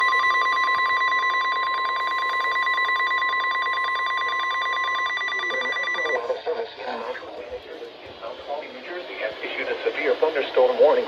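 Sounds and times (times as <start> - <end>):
shrill fluttering alarm tone: 0.0 - 6.2.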